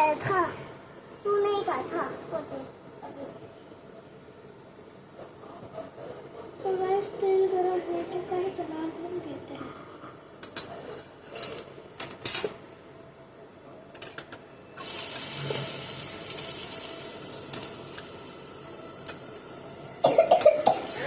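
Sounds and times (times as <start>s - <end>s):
food sizzling in hot oil: 14.8s - 20.0s, 20.8s - 21.0s.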